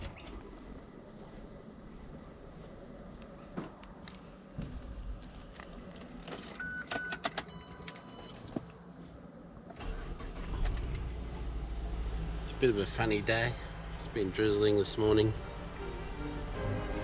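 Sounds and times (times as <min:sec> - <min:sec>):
short electronic beeps: 0:06.6 - 0:08.4
car engine starting: 0:09.6 - 0:17.0.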